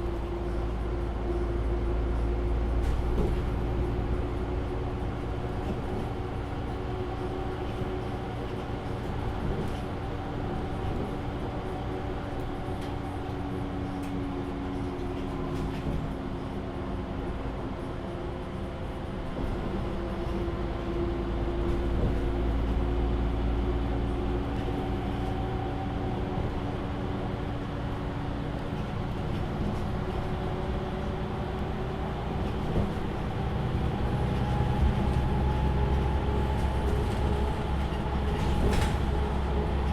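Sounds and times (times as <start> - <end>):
bus engine hum: 0.0 - 39.9.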